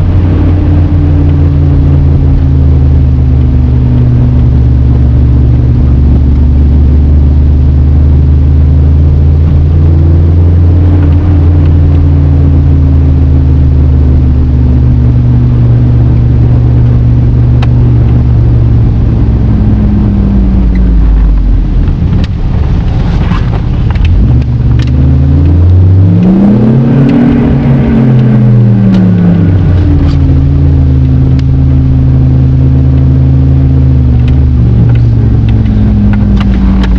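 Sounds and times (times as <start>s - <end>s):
supercharged car engine revving: 0.0s - 36.9s
sharp clicks: 23.8s - 25.6s, 34.2s - 36.9s.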